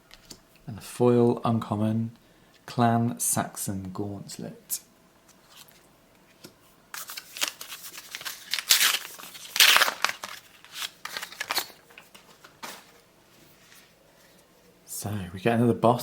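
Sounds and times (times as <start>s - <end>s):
foil wrapper crinkling: 6.9s - 13.0s.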